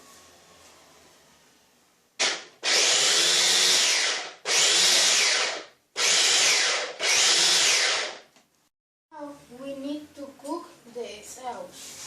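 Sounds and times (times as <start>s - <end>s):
food processor motor pulsing: 2.2s - 8.2s.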